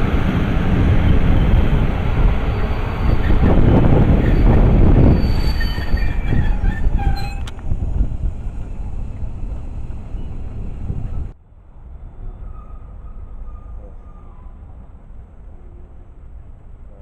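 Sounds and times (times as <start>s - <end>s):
train wheels rumbling: 0.0s - 17.0s
high wheel squeals: 2.4s - 7.5s.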